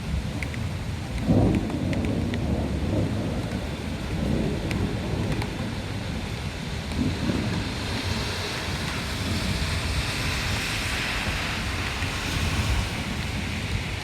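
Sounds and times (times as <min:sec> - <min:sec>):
gusting wind: 0:00.0 - 0:14.0
heavy rain downpour: 0:00.0 - 0:14.0
low thunder rumble: 0:00.0 - 0:14.0
sharp taps: 0:00.4 - 0:02.5, 0:03.4 - 0:08.7.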